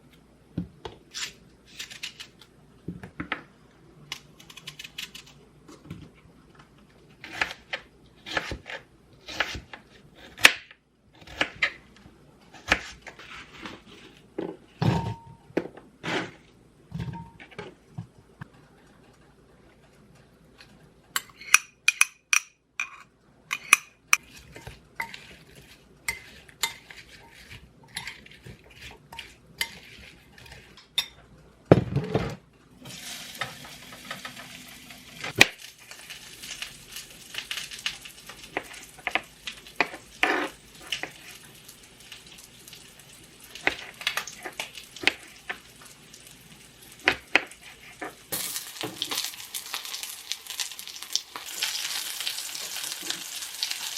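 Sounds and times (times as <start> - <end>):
utensil stirring in a pan: 24.1 - 31.1, 35.8 - 53.9
food sizzling in a hot pan: 32.9 - 39.0, 39.6 - 47.6, 48.3 - 53.9.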